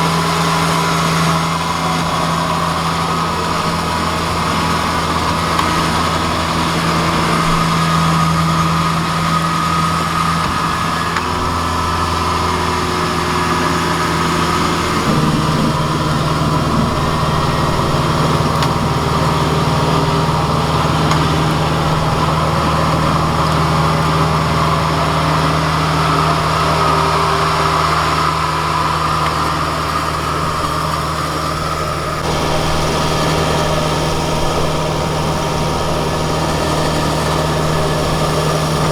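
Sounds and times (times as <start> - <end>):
engine droning steadily: 0.0 - 38.9.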